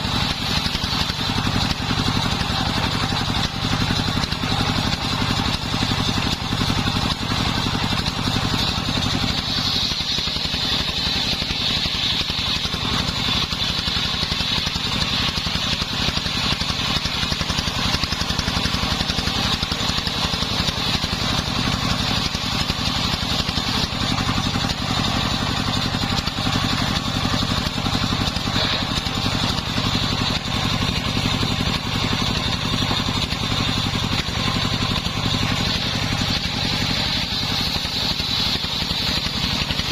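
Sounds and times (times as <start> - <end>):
circular saw cutting wood: 0.0 - 39.9
engine hum: 0.0 - 39.9.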